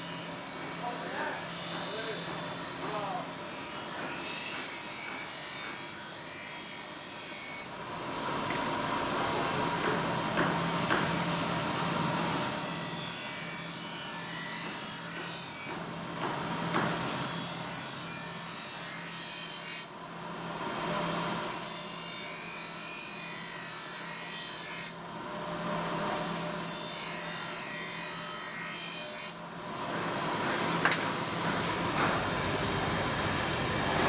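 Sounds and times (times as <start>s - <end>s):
high grinding of blade: 0.0s - 8.6s, 26.1s - 29.4s
grinder motor hum: 29.8s - 34.0s.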